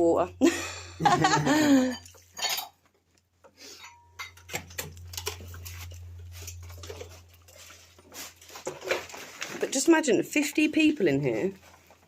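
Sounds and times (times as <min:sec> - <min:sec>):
low steady hum: 0:00.0 - 0:12.0
objects knocking and clinking: 0:01.1 - 0:03.0, 0:03.8 - 0:09.6.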